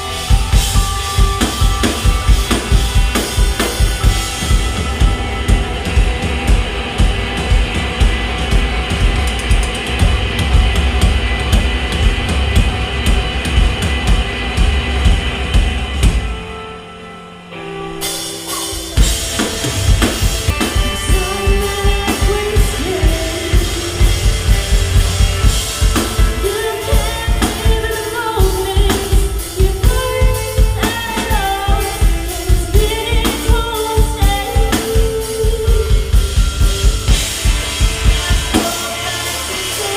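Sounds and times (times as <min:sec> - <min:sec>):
rock band playing live: 0:00.0 - 0:39.9
person singing: 0:20.5 - 0:39.9.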